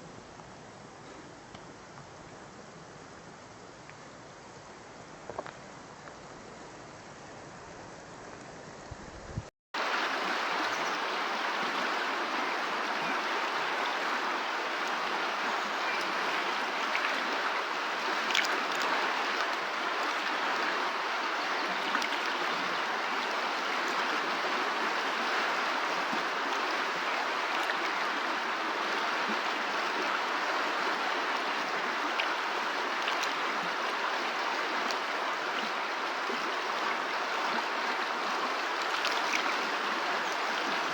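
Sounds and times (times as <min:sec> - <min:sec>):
river water flowing: 0:09.8 - 0:40.9.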